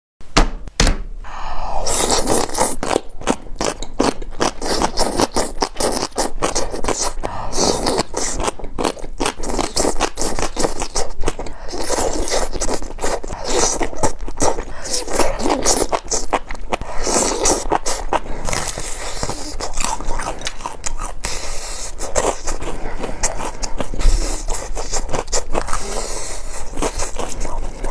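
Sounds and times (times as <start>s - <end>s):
crunchy food being chewed: 1.8s - 27.9s.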